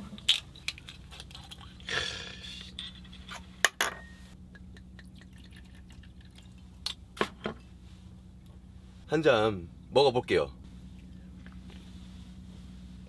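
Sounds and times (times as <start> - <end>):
liquid pouring into a glass: 4.8 - 6.6.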